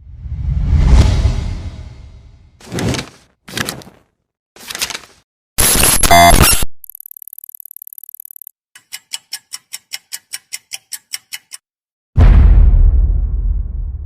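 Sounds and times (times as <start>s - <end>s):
fast high buzzy ticking: 6.8s - 8.5s
clock ticks: 7.0s - 11.7s
loud hit with deep rumble: 12.2s - 14.0s.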